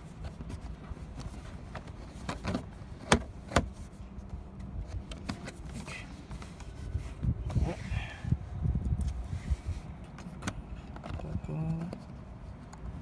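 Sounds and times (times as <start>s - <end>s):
car parts clicking and knocking: 0.2s - 3.9s, 10.0s - 13.0s.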